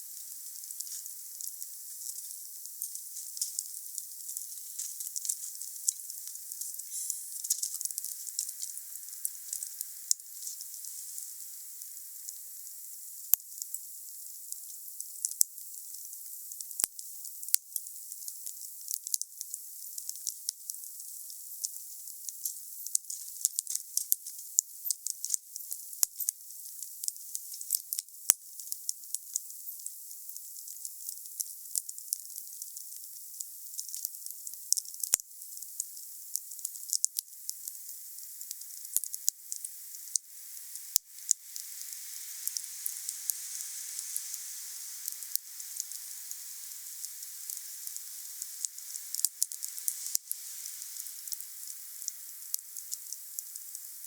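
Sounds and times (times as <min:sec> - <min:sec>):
campfire crackling and popping: 0:00.2 - 0:11.9, 0:36.6 - 0:54.0.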